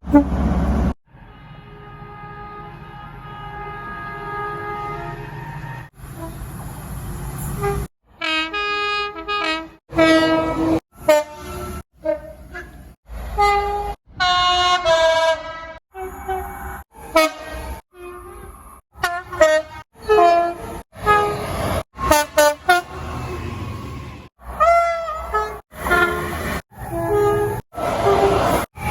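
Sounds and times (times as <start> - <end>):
train horn blasts: 1.2 - 6.4, 7.6 - 23.1, 24.5 - 28.9.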